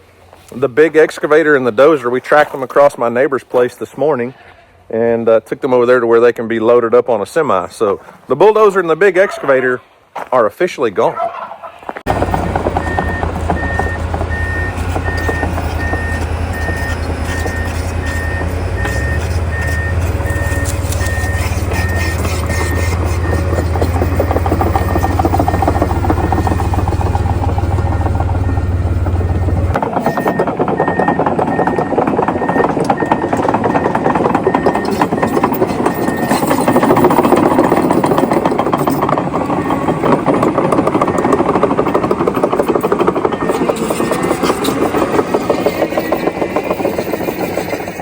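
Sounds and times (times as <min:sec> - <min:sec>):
tractor diesel engine running: 0:12.0 - 0:48.0.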